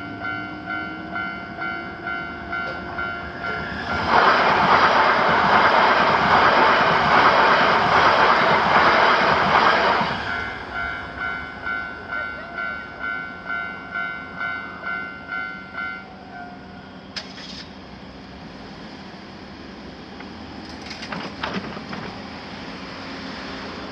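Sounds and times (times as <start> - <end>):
crossing warning bell dinging: 0.0 - 17.2
train rolling past: 0.0 - 23.9.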